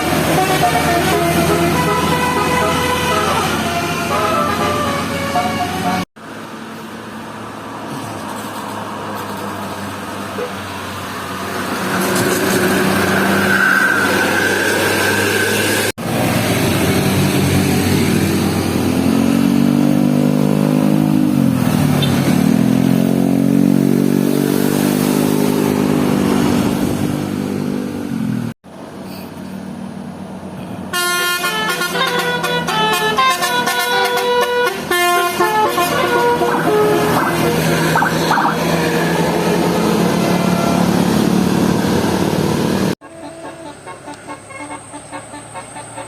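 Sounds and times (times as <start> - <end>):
bus horn melody in stepped notes: 0.0 - 6.1, 30.9 - 38.8, 43.0 - 46.0
multi-tone bus horn call: 0.0 - 6.1, 30.9 - 39.6, 43.0 - 46.0
road and engine noise: 0.0 - 46.0.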